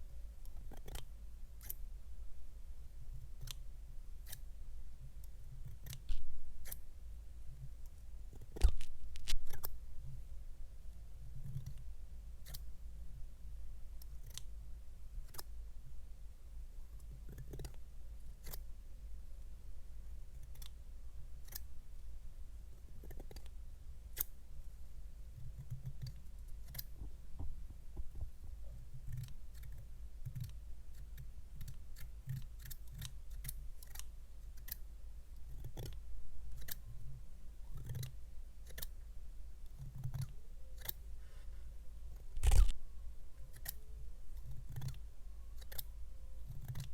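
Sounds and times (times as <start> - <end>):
steady low hum: 0.0 - 46.9
soft clicks and taps: 26.8 - 29.3.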